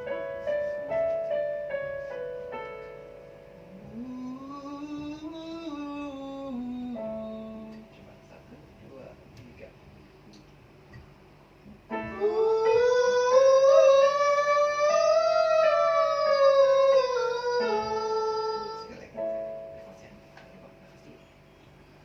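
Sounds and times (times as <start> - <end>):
person singing long vowel: 3.7 - 7.8, 12.0 - 18.9.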